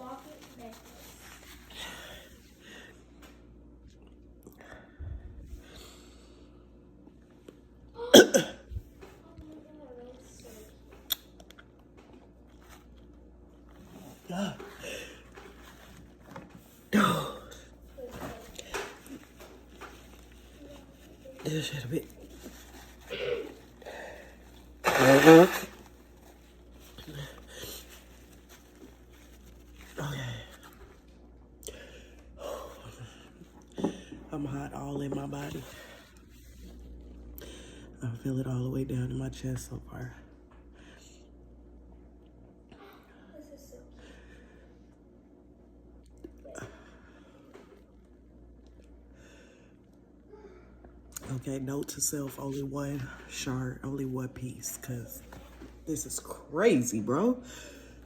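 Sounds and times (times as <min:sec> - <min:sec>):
congested person breathing and sniffing: 0:13.7 - 0:34.3.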